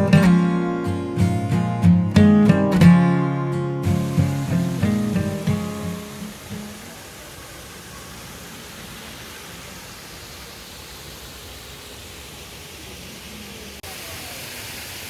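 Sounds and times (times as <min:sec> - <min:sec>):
acoustic guitar music: 0:00.0 - 0:06.9
outdoor hiss: 0:03.7 - 0:15.0.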